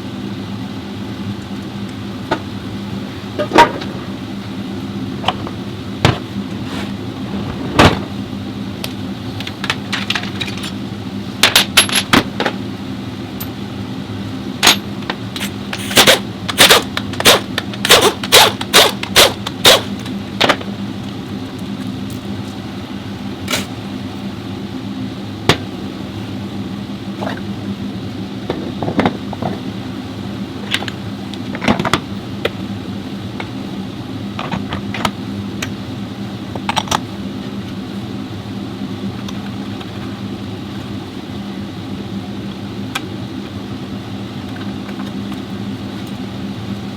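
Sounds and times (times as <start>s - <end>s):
steady low hum: 0.0s - 46.9s.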